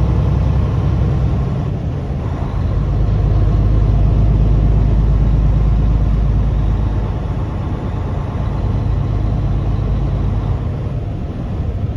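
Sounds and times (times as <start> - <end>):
road noise: 0.0 - 11.9
truck engine running: 0.0 - 11.9.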